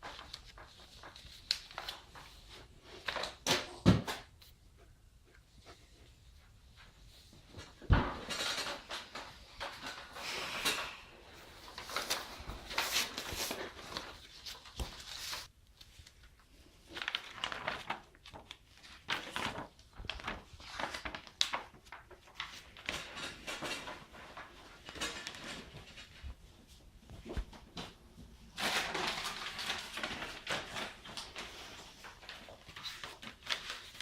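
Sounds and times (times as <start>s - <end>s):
objects rustling and scraping: 0.0s - 15.5s, 22.6s - 34.0s.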